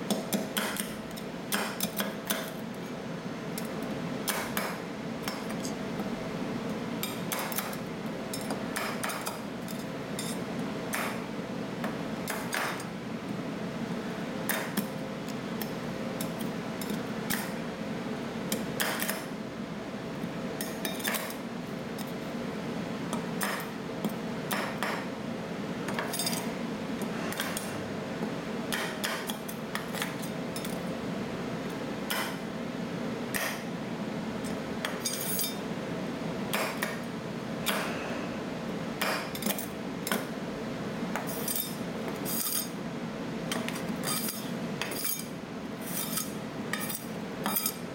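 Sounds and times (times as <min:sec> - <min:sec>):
metal spatulas chopping and scraping: 0:25.9 - 0:26.5, 0:27.2 - 0:27.8, 0:34.8 - 0:35.6, 0:41.2 - 0:42.8, 0:43.5 - 0:47.9.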